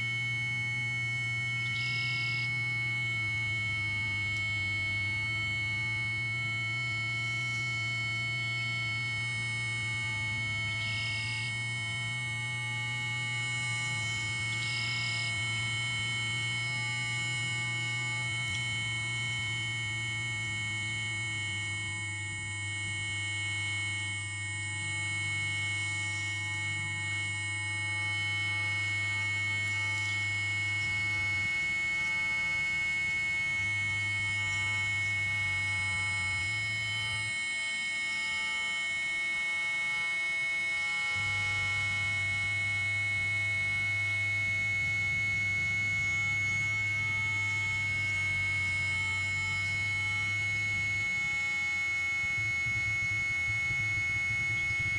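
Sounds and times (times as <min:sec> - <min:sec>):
electronic drone of held tones: 0:00.0 - 0:54.9
high electronic tone: 0:00.0 - 0:54.9
low bass tone: 0:41.1 - 0:54.9.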